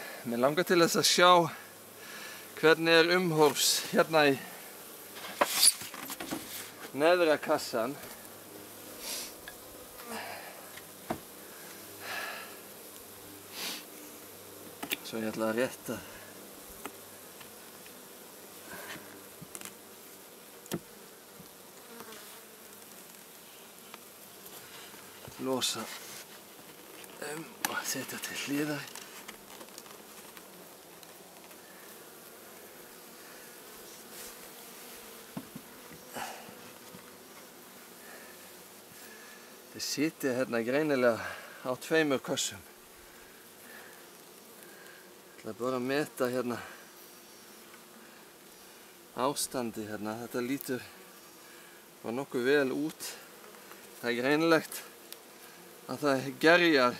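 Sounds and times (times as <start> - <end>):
honeybees buzzing: 0.0 - 56.9
hive parts scraping: 0.4 - 41.3
breathy sniffs: 9.0 - 9.4, 13.5 - 13.9, 36.1 - 36.6
light knocks on hive parts: 10.7 - 11.3, 14.6 - 15.1, 16.7 - 18.0, 18.9 - 19.8, 20.6 - 22.2, 35.3 - 37.1.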